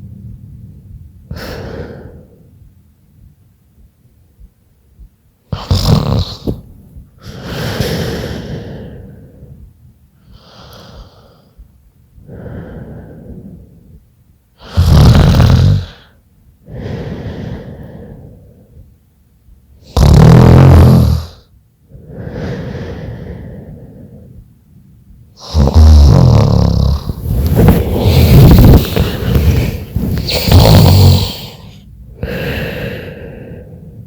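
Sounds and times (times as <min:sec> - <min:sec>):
soft breathy breaths: 0:00.0 - 0:20.0, 0:21.2 - 0:34.0
loud rattling snores: 0:05.6 - 0:06.6, 0:14.6 - 0:16.1, 0:19.8 - 0:21.4, 0:25.4 - 0:31.8.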